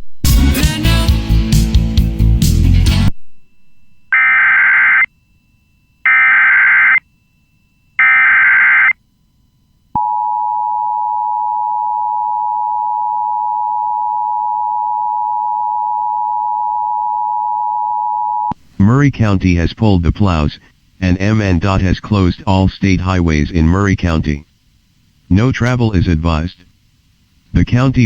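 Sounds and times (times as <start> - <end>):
modem-like data warble: 3.1 - 9.1
two-tone attention signal: 3.4 - 9.0.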